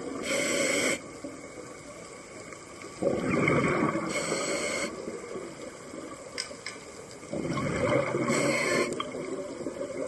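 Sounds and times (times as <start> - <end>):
regulator inhalation hiss: 0.1 - 1.1, 4.1 - 5.1, 8.2 - 9.1
exhaled bubbles burbling underwater: 2.8 - 6.3, 7.2 - 10.0.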